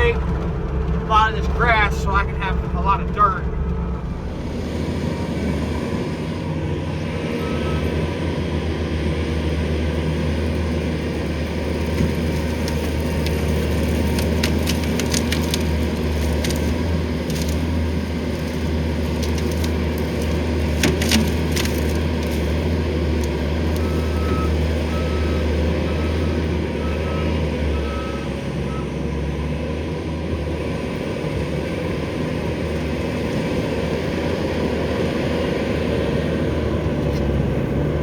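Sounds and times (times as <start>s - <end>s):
reversing beeper beeping: 0.0s - 6.2s, 7.2s - 8.1s
skid steer engine running: 0.0s - 38.0s
brush and wood cracking: 11.8s - 24.8s.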